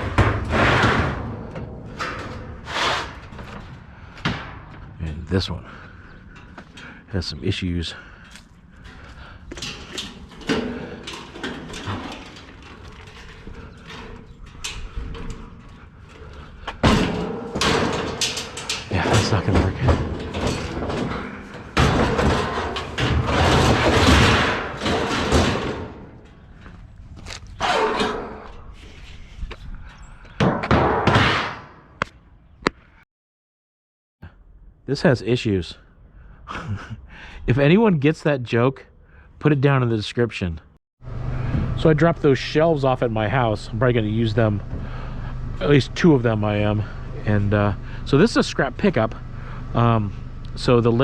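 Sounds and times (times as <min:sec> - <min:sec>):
junk thudding: 0:00.0 - 0:05.0, 0:08.8 - 0:26.9
banging and scraping: 0:00.0 - 0:07.0, 0:08.2 - 0:29.7, 0:30.3 - 0:32.1
items clattering: 0:08.8 - 0:27.6.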